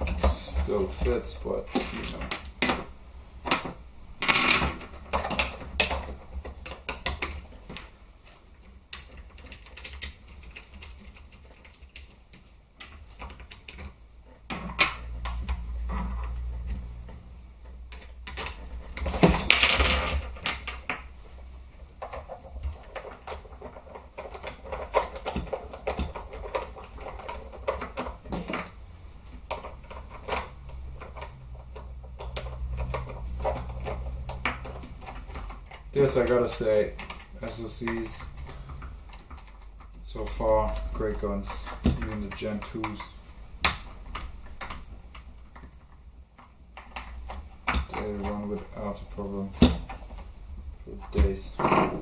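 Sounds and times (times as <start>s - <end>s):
rifle parts clicking and knocking: 22.0s - 28.8s.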